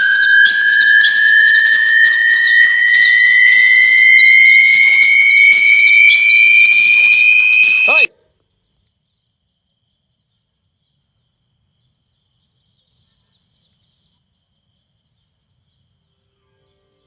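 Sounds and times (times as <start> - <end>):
faint insect chirping: 0.0 - 8.1
loud high whistling tone: 0.0 - 8.1.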